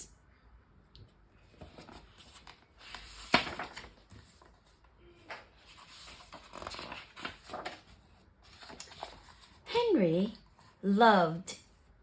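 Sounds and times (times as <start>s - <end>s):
book pages rustling: 1.4s - 4.9s, 5.5s - 9.7s.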